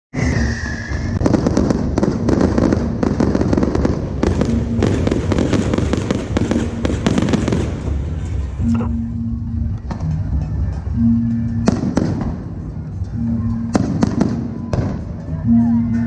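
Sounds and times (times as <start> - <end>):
falling firework whistle: 0.2 - 3.6
fireworks crackling bangs: 1.0 - 8.6, 11.7 - 12.8, 13.7 - 15.3.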